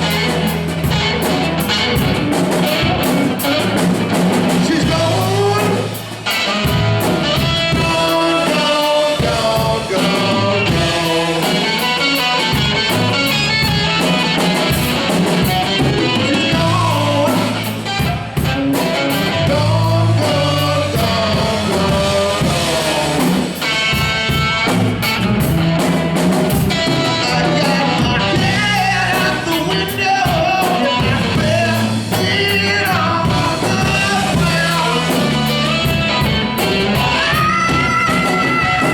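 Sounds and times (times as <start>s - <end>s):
rock band playing: 0.0s - 38.9s
person singing: 4.5s - 6.6s, 7.2s - 12.8s, 16.0s - 18.2s, 18.8s - 23.7s, 26.9s - 38.9s.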